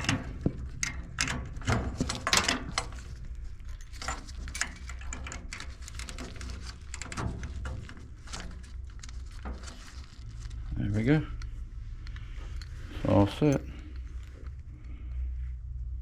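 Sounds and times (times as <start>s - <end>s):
hoses and connectors clicking: 0.0s - 10.2s
steady low hum: 0.0s - 16.0s.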